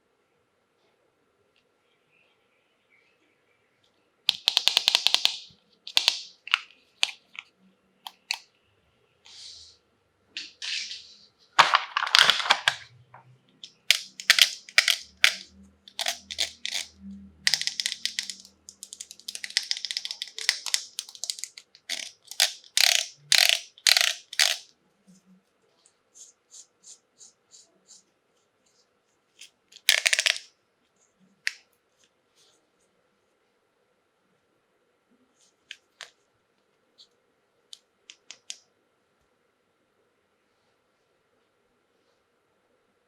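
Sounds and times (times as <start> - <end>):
plastic packaging crinkling: 17.5 - 24.6.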